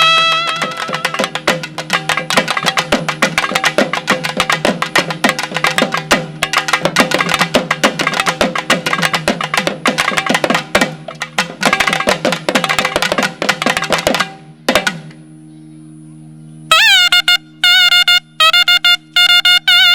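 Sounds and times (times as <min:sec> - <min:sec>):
drums playing fast beat: 0:00.0 - 0:15.0.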